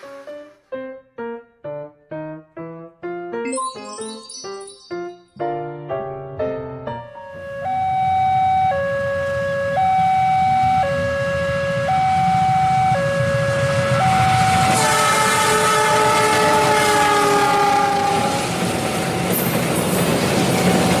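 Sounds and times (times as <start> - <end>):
train horn: 7.7 - 19.1
running train rumble: 10.4 - 21.0.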